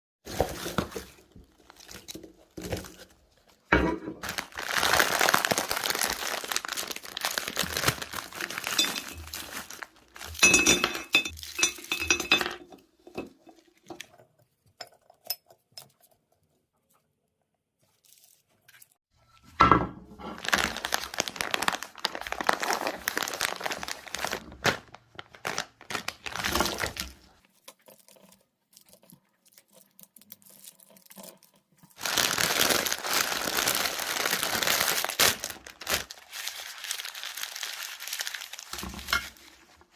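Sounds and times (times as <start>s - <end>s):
plastic bags crinkling and tearing: 0.3s - 11.9s, 20.3s - 27.4s, 30.2s - 39.9s.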